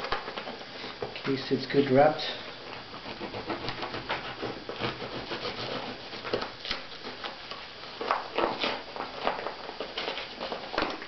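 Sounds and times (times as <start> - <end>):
knife cutting parcel wrapping: 2.6 - 11.0.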